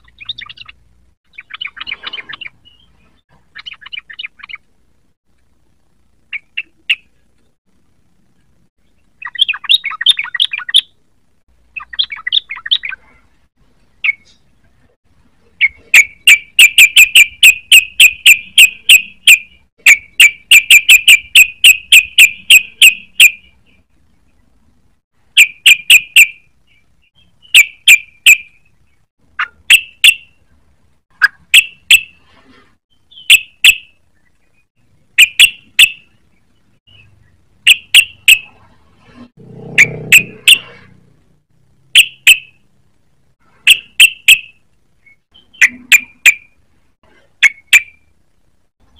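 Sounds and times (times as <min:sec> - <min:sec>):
bulbul chirping: 0:00.0 - 0:04.6, 0:09.2 - 0:11.0, 0:11.7 - 0:13.1, 0:15.6 - 0:23.9, 0:25.3 - 0:30.5, 0:31.2 - 0:32.2, 0:32.9 - 0:34.3, 0:35.2 - 0:36.2, 0:36.8 - 0:38.6, 0:39.8 - 0:40.9, 0:41.9 - 0:42.7, 0:43.6 - 0:46.6.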